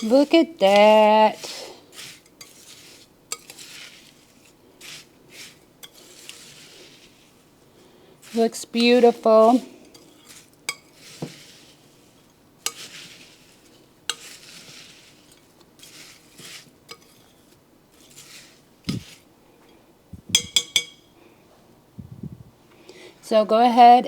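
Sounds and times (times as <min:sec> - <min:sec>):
spoon stirring cereal: 0:00.0 - 0:21.4
ringing clinks: 0:20.3 - 0:21.1
spoon clicking against bowl: 0:20.3 - 0:21.1.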